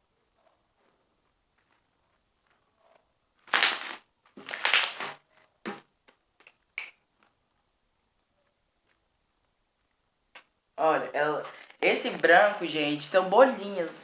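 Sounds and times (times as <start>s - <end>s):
slime squishing and crackling: 3.4s - 5.2s.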